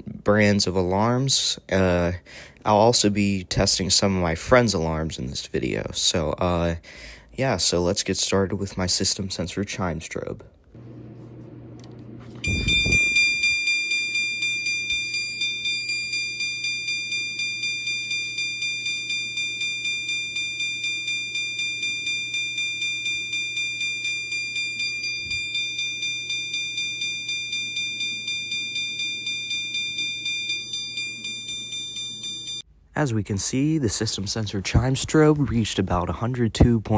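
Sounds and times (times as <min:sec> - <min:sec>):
alarm chime ringing: 0:12.4 - 0:32.7.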